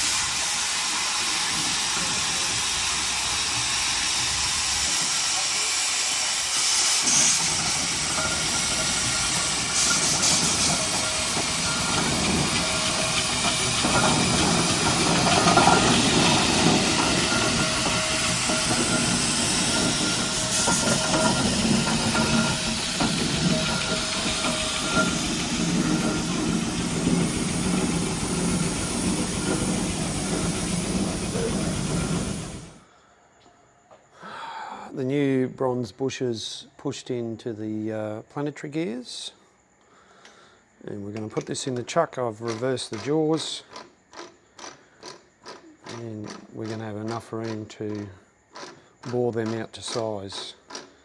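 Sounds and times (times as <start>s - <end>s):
loud steady hissing: 0.0s - 32.9s
mechanical rumble: 7.2s - 32.8s.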